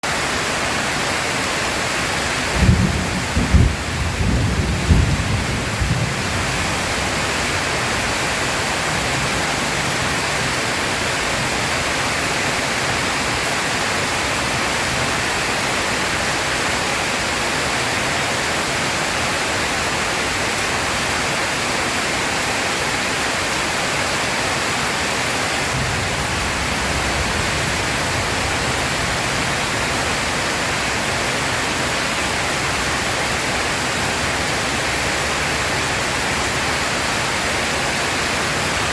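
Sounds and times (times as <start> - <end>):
heavy rain pouring: 0.0 - 38.9
thunder rumble: 2.4 - 8.2, 25.6 - 31.0.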